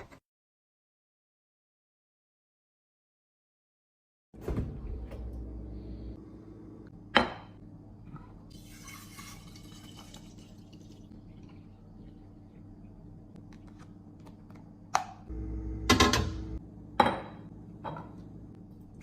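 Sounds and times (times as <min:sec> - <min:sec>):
low steady hum: 0:04.5 - 0:19.0.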